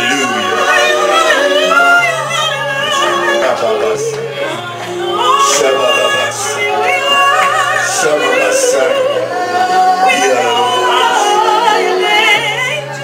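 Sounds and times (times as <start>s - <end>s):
sustained chords: 0.0s - 13.0s.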